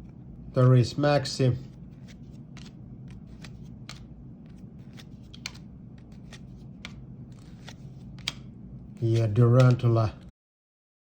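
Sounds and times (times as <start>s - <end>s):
faint low hum: 0.0s - 10.3s
trading cards clicking and rustling: 1.6s - 10.3s.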